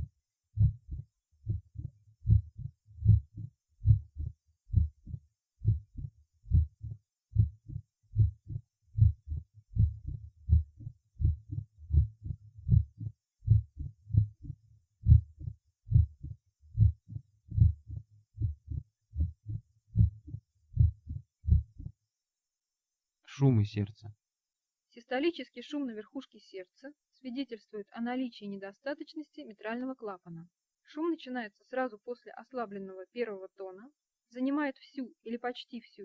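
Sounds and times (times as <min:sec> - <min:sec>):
heartbeat through stethoscope: 0:00.0 - 0:22.0.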